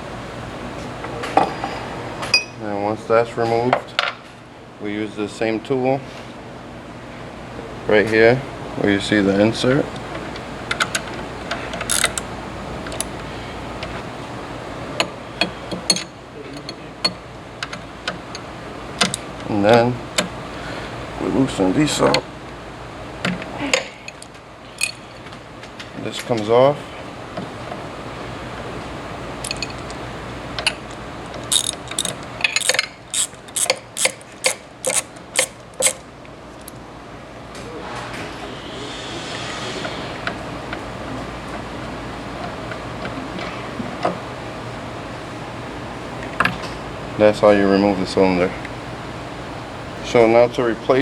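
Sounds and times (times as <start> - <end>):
hand tools clicking on metal: 11.7 - 12.3, 29.4 - 30.0, 31.4 - 36.0
short hissy scrape: 37.8 - 40.5.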